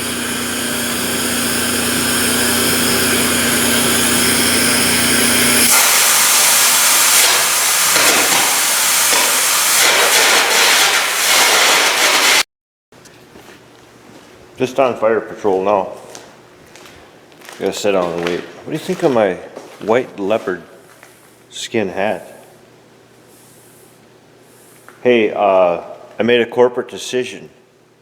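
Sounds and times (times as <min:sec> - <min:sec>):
steady hum: 0:00.0 - 0:10.2
arc gouging hiss and crackle: 0:05.4 - 0:12.3.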